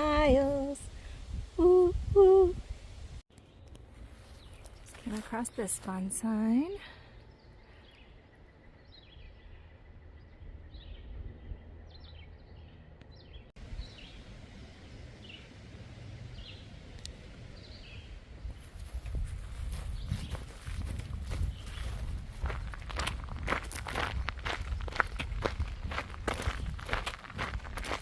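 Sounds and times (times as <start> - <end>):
birds chirping: 3.3 - 28.0
low outdoor rumble: 3.8 - 19.8.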